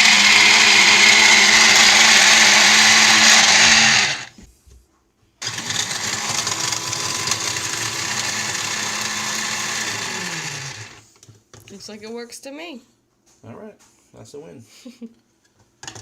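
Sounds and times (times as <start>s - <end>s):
kitchen chopper motor running: 0.0s - 4.3s, 5.4s - 11.0s.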